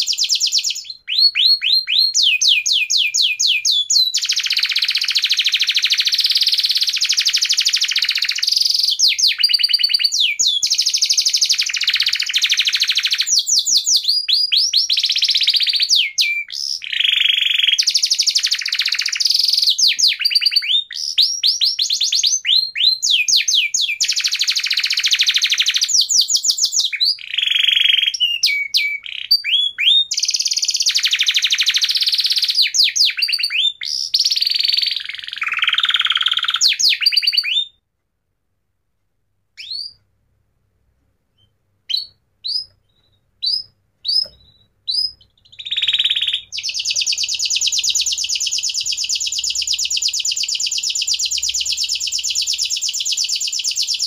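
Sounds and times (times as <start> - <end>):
bird singing whistled notes and trills: 0.0 - 37.8, 39.6 - 40.0, 41.3 - 54.0.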